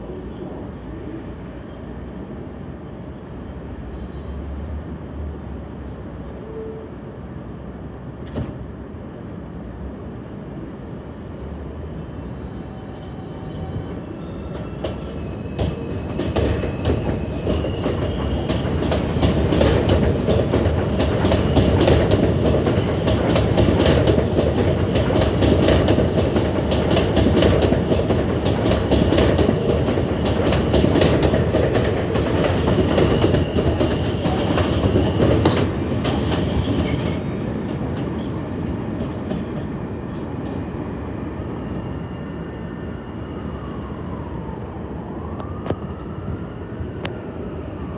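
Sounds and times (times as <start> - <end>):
high wheel squeal: 12.0 - 19.2, 40.9 - 44.4, 45.9 - 47.9
train wheels clacking on track: 14.5 - 40.6.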